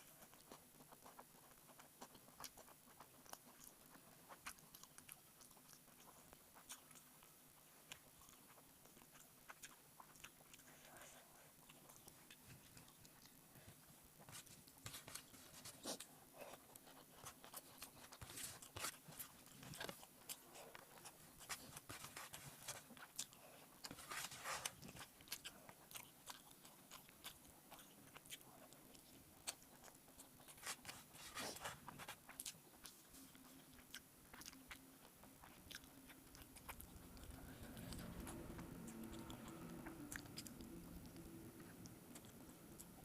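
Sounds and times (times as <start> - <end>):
chewing and wet mouth clicks: 32.3 - 43.0.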